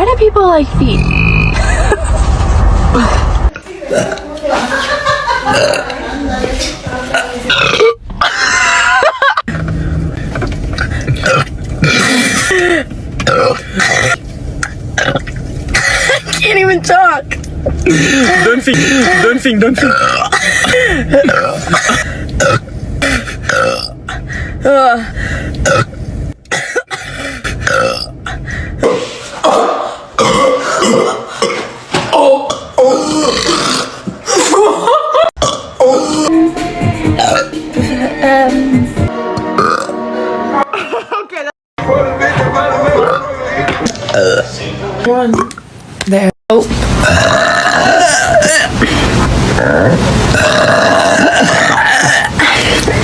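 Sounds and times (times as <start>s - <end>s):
woman burping: 3.0s - 4.3s, 5.5s - 6.0s, 7.1s - 8.8s, 11.1s - 14.2s, 15.0s - 16.5s, 17.8s - 24.0s, 25.6s - 36.4s, 37.2s - 37.5s, 39.6s - 39.9s, 44.1s - 44.5s, 47.0s - 48.8s, 50.4s - 53.0s.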